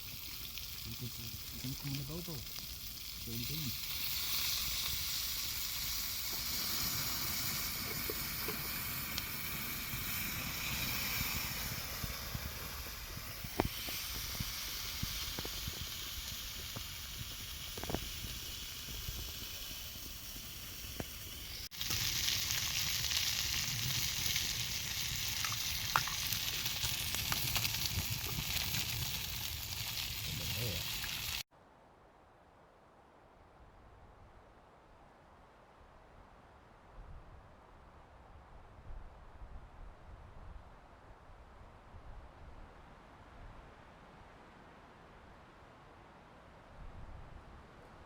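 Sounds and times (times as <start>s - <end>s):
green beans sizzling: 0.0s - 31.5s.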